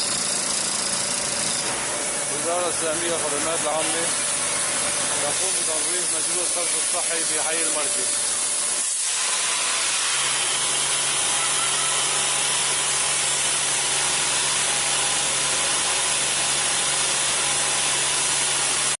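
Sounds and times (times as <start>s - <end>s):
machinery hissing: 2.0s - 14.8s.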